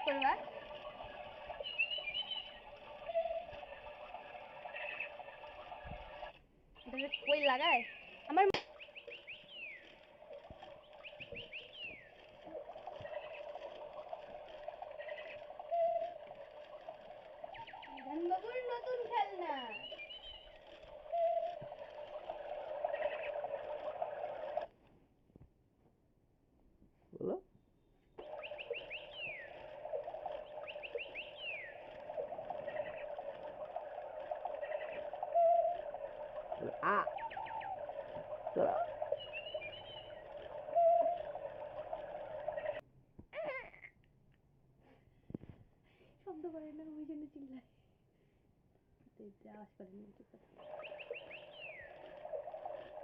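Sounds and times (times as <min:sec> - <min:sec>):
toy bird chirping: 0:00.0 - 0:24.7, 0:28.2 - 0:42.8, 0:50.6 - 0:53.0
faint hum: 0:00.0 - 0:25.5, 0:26.2 - 0:43.8, 0:44.8 - 0:53.0.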